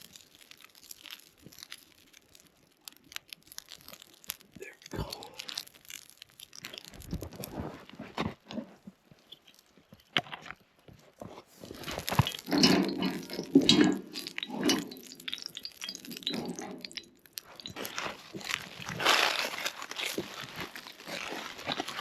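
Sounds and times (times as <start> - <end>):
food packaging rustling: 0.0 - 22.0
cooking gear clinking: 11.6 - 22.0.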